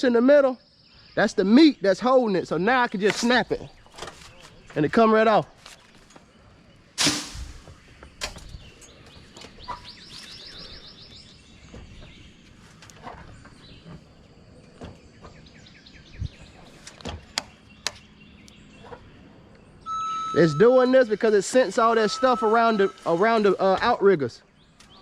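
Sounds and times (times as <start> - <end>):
high chirping trill: 19.8 - 23.6.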